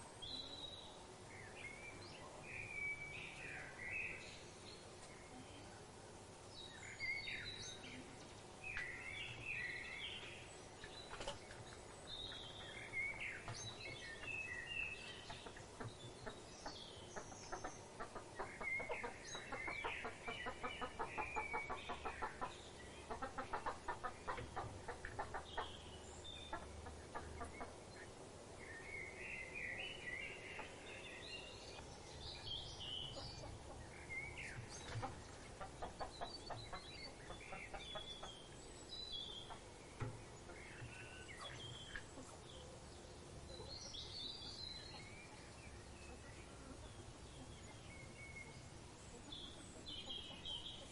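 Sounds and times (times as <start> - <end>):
birds chirping and warbling: 0.0 - 50.9
bird rapid clucking: 15.2 - 25.8, 26.4 - 27.8, 33.1 - 38.6.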